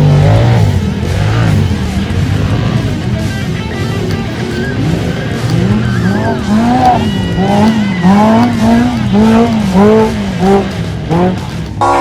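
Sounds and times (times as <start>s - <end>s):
race car engine revving: 0.0s - 12.0s.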